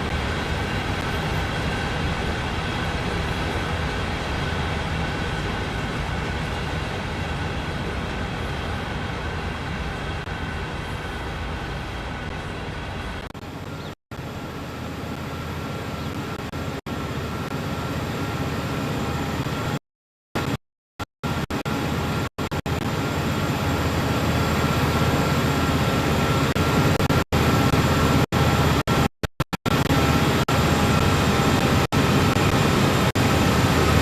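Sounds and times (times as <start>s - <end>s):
train wheels rumbling on rail: 0.0s - 13.9s.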